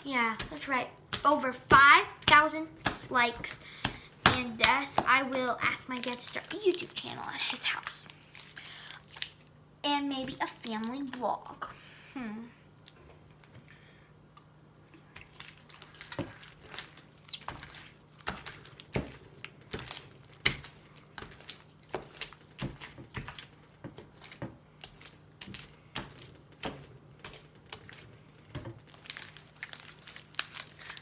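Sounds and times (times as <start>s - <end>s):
slime squished by hand: 15.1s - 31.0s.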